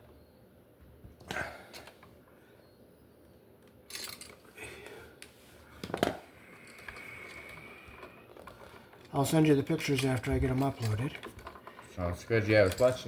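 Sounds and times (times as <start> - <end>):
hand tools clicking and scraping: 3.6 - 13.0.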